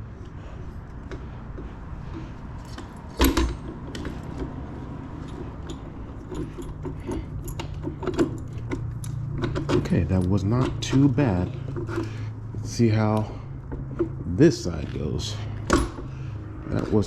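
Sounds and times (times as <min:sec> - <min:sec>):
metal parts clinking and rattling: 0:02.6 - 0:12.3.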